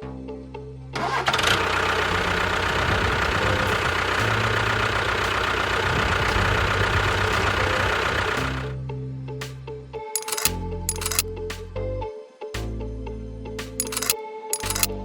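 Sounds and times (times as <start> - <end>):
engine starting and running: 1.0 - 8.8, 10.2 - 11.2, 13.8 - 15.0.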